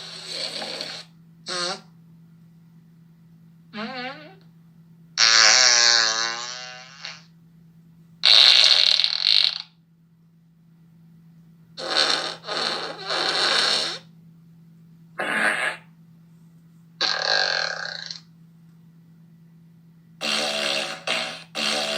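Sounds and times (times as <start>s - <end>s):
fart sound effects: 0.0s - 1.9s, 3.8s - 4.4s, 5.2s - 7.3s, 8.2s - 9.8s, 11.8s - 14.1s, 15.2s - 15.9s, 17.0s - 18.3s, 20.2s - 21.9s
steady low hum: 0.0s - 8.6s, 9.6s - 21.9s.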